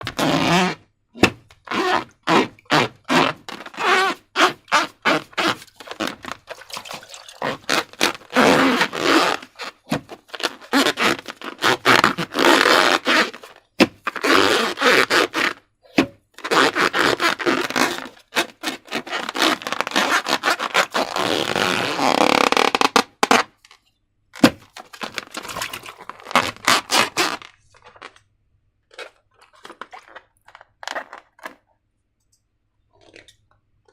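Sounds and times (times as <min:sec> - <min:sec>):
hands squelching balloons and slime: 0:01.2 - 0:15.4, 0:24.4 - 0:31.9.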